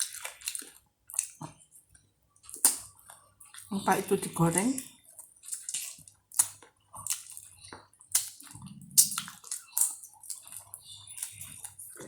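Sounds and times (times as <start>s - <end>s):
wet chewing and sucking: 5.1s - 12.0s
smacks and crunches: 5.2s - 12.0s.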